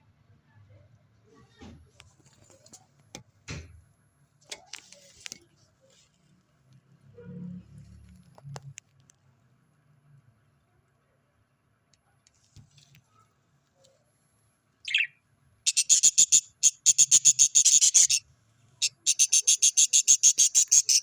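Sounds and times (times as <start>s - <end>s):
parrot chicks chirping: 14.8s - 18.2s, 18.8s - 21.0s.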